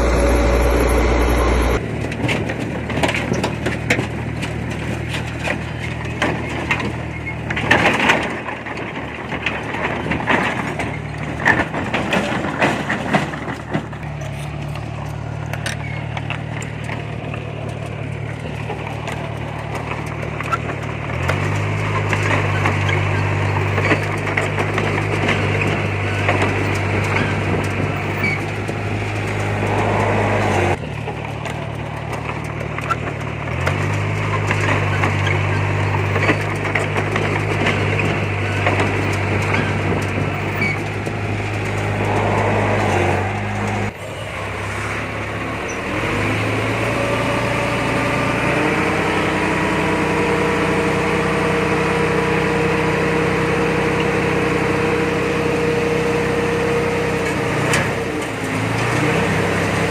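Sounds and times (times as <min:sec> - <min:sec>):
metal clanks and scraping: 0:00.0 - 0:47.6
diesel machinery engine hum: 0:00.0 - 0:59.9.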